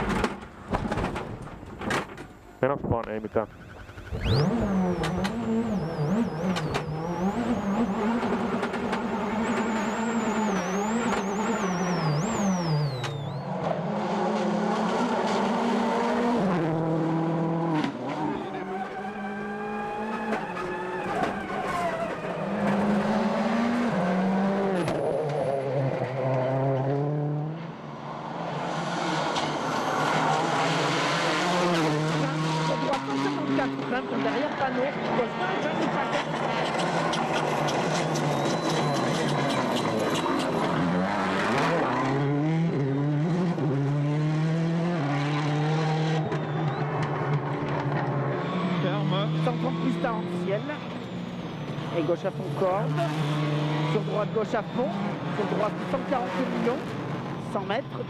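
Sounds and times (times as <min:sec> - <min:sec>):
rally car engine revving through gears: 0:03.1 - 0:58.0.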